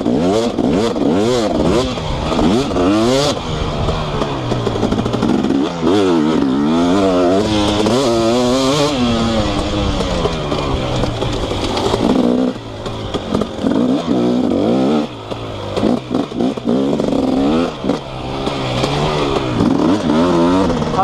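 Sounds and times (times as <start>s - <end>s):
two-stroke motorcycle engine revving: 0.0s - 21.0s.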